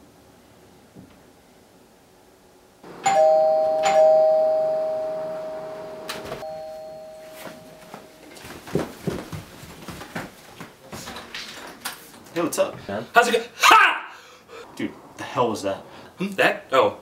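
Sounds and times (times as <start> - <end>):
two-note doorbell chime: 3.0 - 8.2.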